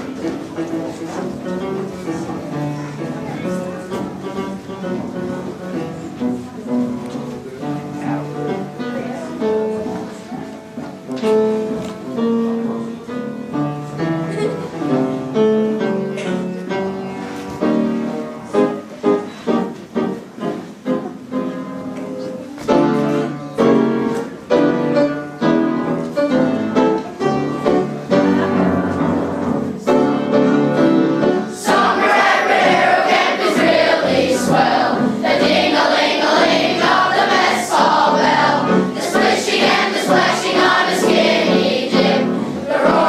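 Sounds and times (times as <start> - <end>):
piano melody over chords: 0.0 - 43.0
singing voices: 31.6 - 43.0.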